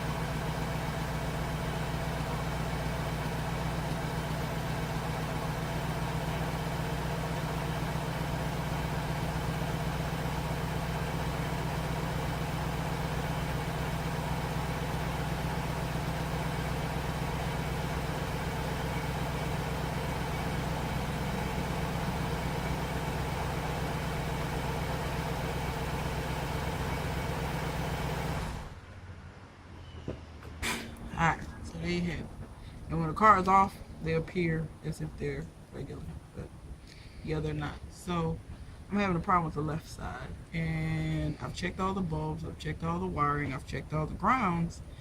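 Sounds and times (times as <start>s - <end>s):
car engine idling: 0.0s - 28.9s.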